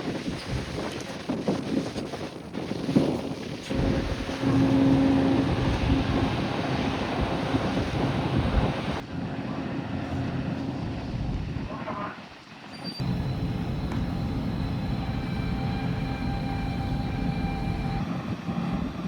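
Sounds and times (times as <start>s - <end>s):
wind buffeting microphone: 0.0s - 12.1s, 13.0s - 19.0s
sea noise: 0.0s - 18.7s
ferry low hum: 13.0s - 19.0s.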